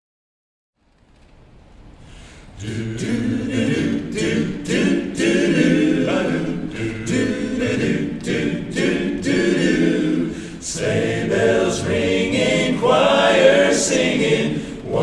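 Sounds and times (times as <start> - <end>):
singers breathing: 2.0 - 2.6, 10.2 - 10.7, 14.5 - 14.9
men's chorus singing a cappella: 2.6 - 15.0.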